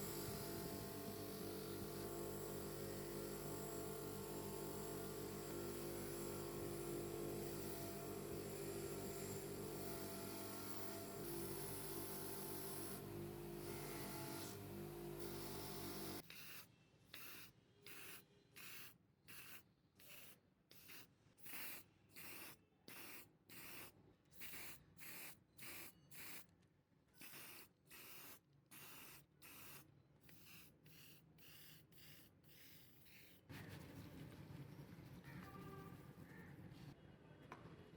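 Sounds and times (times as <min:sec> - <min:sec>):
short hissing spray bursts: 0:16.2 - 0:26.5, 0:27.2 - 0:33.5.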